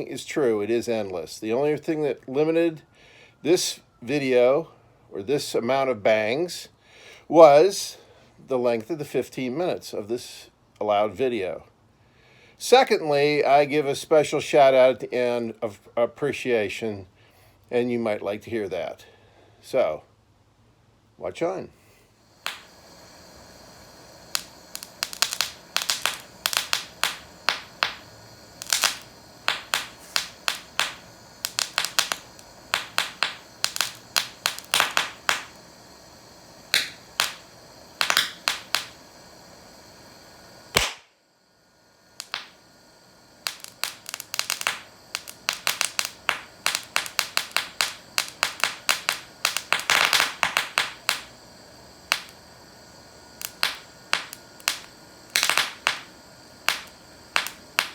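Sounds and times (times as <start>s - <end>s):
firecrackers banging: 22.3s - 39.8s, 40.4s - 41.1s, 42.1s - 42.6s, 43.2s - 57.9s
single sharp crack: 40.7s - 41.1s, 42.2s - 42.6s.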